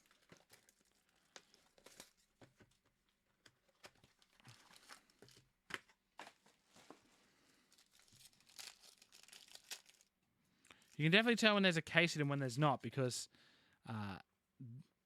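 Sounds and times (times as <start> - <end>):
card pack wrapping tearing: 7.7 - 10.1.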